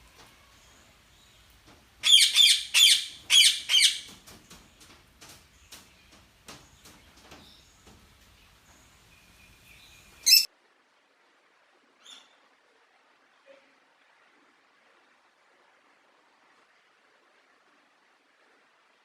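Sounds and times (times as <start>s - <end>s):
bird chirping: 0.6s - 4.2s, 5.6s - 10.5s
bird whistle: 10.2s - 10.5s.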